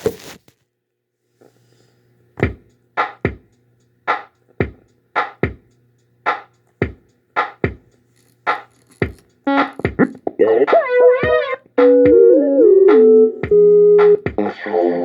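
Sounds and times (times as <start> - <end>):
kick and snare beat: 2.4 - 12.3, 12.9 - 14.6.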